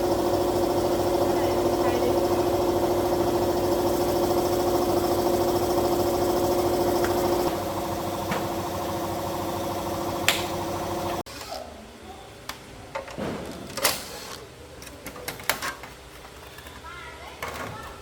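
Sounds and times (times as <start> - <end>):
motorcycle engine idling: 0.0 - 11.2
sharp click: 10.2 - 10.6.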